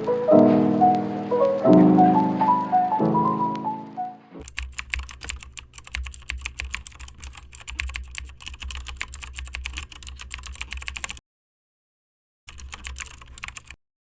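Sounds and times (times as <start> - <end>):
rapid keyboard typing: 4.4 - 11.2, 12.5 - 13.8.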